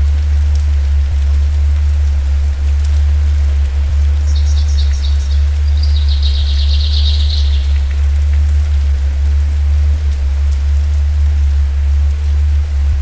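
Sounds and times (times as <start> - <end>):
deep low rumble: 0.0 - 13.0
steady rain: 0.0 - 13.0
small bird chirping and trilling: 4.3 - 7.9.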